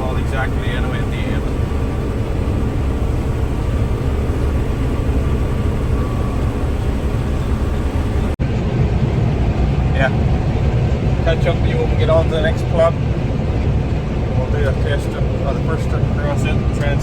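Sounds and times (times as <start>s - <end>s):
faint steady hum: 0.0s - 8.4s
combine harvester engine drone: 0.0s - 17.0s.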